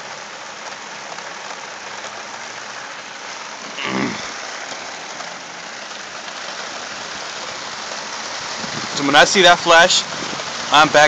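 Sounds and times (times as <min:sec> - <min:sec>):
heavy rain hissing: 0:00.0 - 0:11.0.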